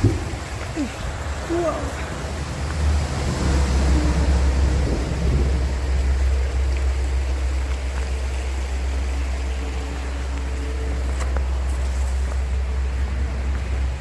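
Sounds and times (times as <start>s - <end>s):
highway traffic rumble: 0.0s - 14.0s.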